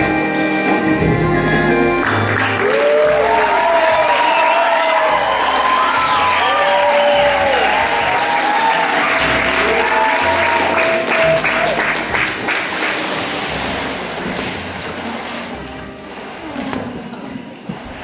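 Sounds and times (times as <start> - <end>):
music: 0.0 - 18.0
audience applauding: 2.0 - 15.4.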